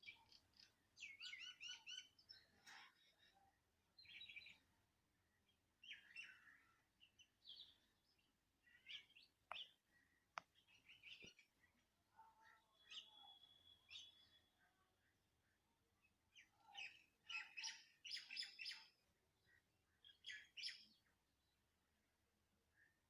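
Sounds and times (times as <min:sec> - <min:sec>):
birds chirping and calling: 0:00.0 - 0:03.4, 0:05.4 - 0:11.8, 0:16.4 - 0:21.0.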